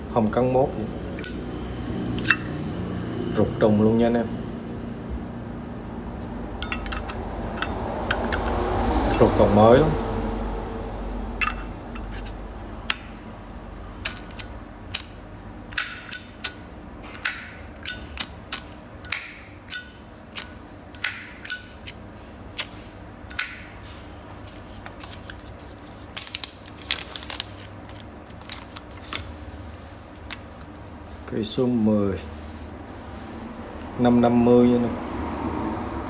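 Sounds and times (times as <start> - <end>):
metal lighter clicking and clinking: 1.2 - 1.6, 15.7 - 16.6, 17.2 - 22.0.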